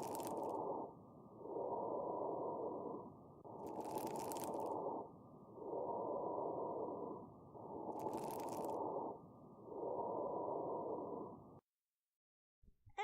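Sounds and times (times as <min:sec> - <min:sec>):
muffled breathing: 0:00.0 - 0:11.6
fine high crackling: 0:03.5 - 0:05.1.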